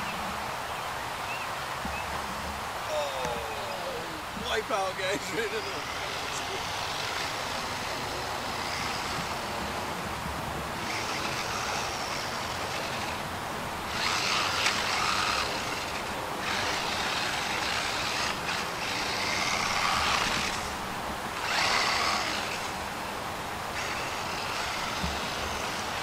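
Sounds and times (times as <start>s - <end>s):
tyre noise: 1.3s - 22.9s
toy truck motor whining: 3.0s - 10.0s, 10.8s - 13.3s, 13.9s - 20.8s, 21.4s - 22.8s, 23.7s - 26.0s.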